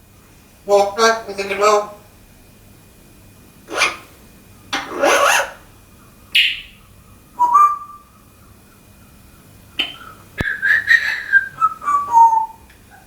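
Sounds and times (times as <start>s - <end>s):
parrot making rough calls: 3.7s - 4.2s, 4.8s - 5.7s.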